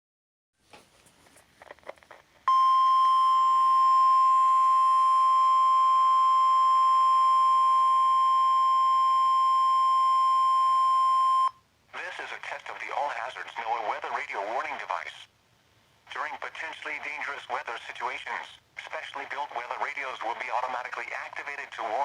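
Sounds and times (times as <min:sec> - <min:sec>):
steady alarm beep: 0:02.5 - 0:11.6.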